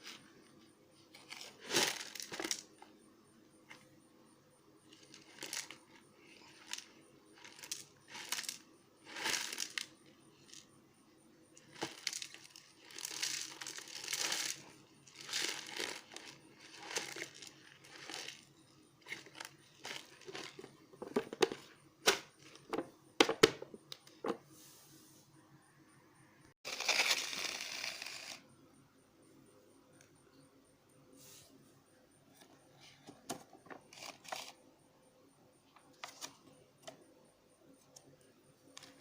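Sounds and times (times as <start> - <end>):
plastic packet crinkling and tearing: 11.8 - 18.4, 26.7 - 28.3.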